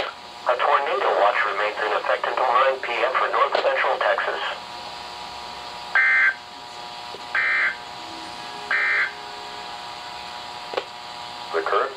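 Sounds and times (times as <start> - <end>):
faint steady hum: 0.0 - 11.9
digital data bursts: 7.3 - 9.3.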